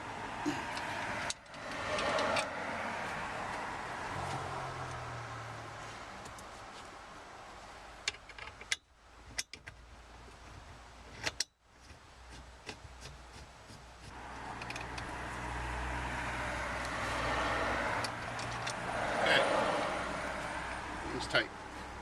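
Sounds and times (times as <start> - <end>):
metallic clicks of hand tools: 0.7 - 2.5, 14.5 - 15.1, 18.0 - 18.8.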